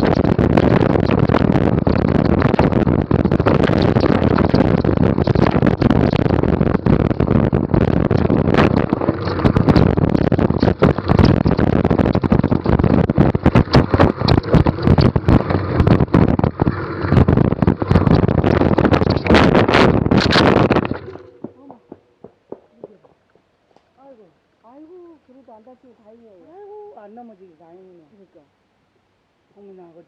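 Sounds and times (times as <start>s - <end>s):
wind rushing over microphone: 0.0s - 23.2s
bike rattling and knocking: 0.0s - 23.9s.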